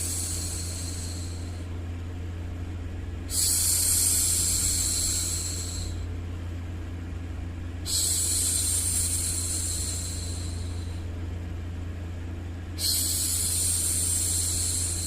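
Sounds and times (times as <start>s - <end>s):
low background hum: 0.0s - 15.0s
woman shushing: 12.8s - 15.0s.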